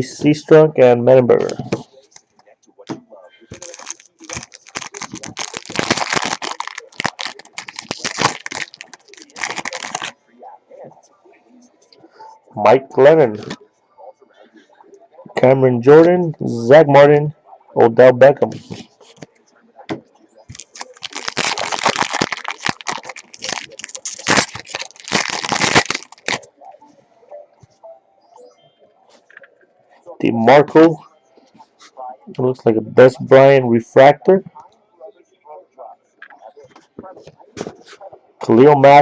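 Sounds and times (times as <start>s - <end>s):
foil wrapper crinkling and tearing: 3.5s - 10.2s, 20.5s - 26.5s.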